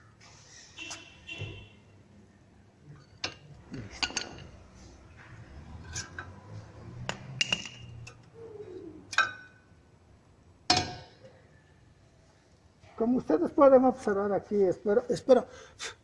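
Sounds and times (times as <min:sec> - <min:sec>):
metal brake pads and tools clinking: 0:02.9 - 0:04.8, 0:05.8 - 0:08.3.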